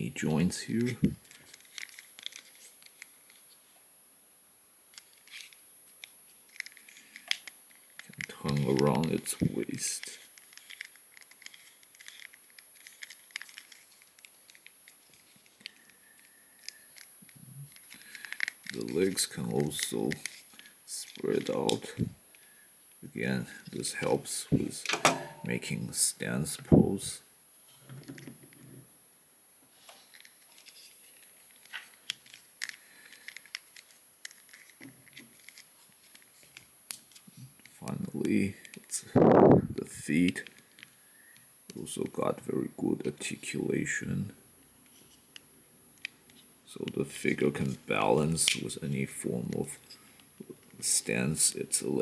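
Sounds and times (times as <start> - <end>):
plastic action figure joints clicking: 6.5 - 9.2, 10.4 - 15.0, 32.1 - 36.2.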